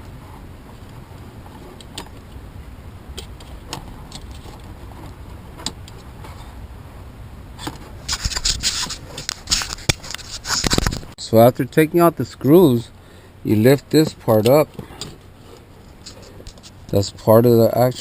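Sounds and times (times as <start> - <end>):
rattling and clicking: 3.2 - 6.5.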